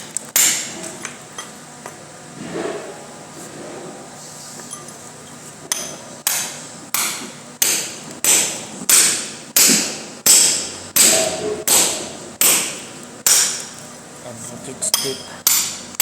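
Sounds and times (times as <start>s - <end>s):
hand tool striking: 5.7s - 13.8s, 14.9s - 16.0s.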